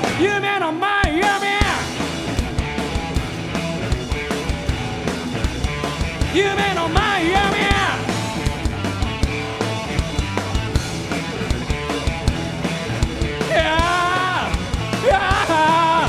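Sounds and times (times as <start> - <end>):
drum kit beating steadily: 0.0 - 16.0
punk rock band playing: 0.0 - 16.0
person singing: 13.4 - 16.0.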